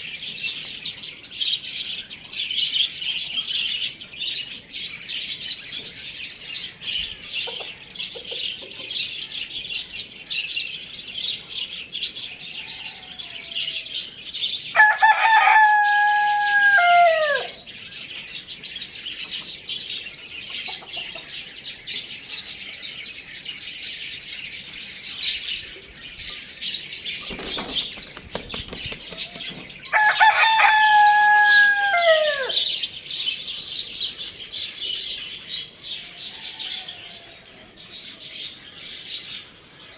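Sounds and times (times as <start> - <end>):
small birds chirping: 0.0 - 39.9
rooster crowing: 12.5 - 14.1, 14.8 - 17.6, 29.2 - 32.8, 36.0 - 37.8.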